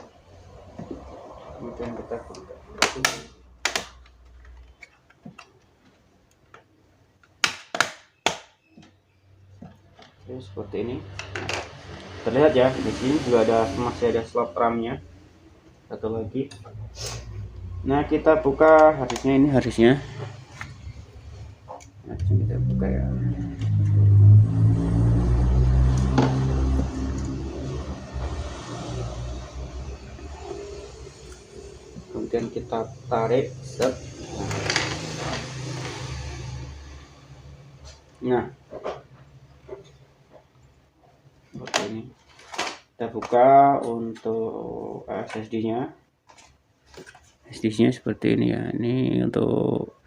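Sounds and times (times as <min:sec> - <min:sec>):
low engine-like hum: 0:20.7 - 0:32.6.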